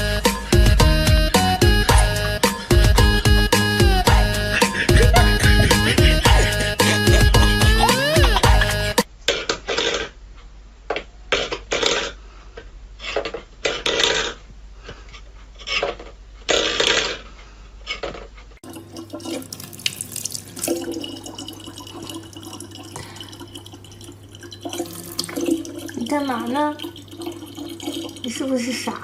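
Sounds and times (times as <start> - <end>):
low hum: 0.0 - 9.0
water running from tap: 18.6 - 29.0
water splashing: 18.6 - 29.0.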